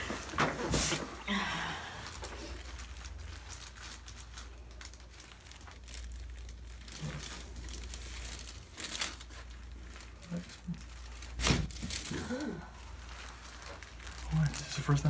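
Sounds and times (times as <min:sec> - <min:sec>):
crinkling and rustling: 0:00.0 - 0:15.0
low steady hum: 0:00.0 - 0:15.0.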